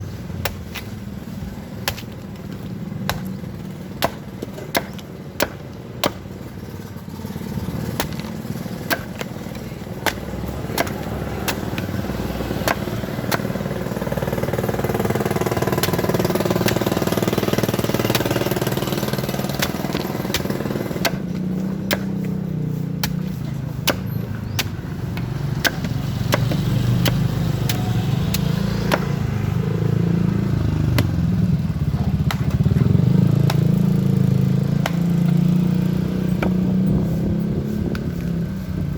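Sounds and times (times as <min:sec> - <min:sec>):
blade chopping coconut: 0:01.8 - 0:06.6, 0:07.3 - 0:29.4, 0:30.9 - 0:31.3, 0:33.4 - 0:34.0, 0:34.7 - 0:35.5
engine running: 0:02.2 - 0:38.9.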